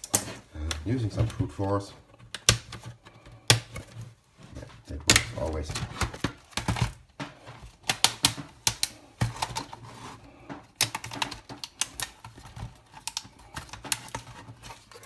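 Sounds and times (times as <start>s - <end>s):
laptop housing clicking and snapping: 2.2s - 3.9s, 6.2s - 9.8s, 10.5s - 14.4s.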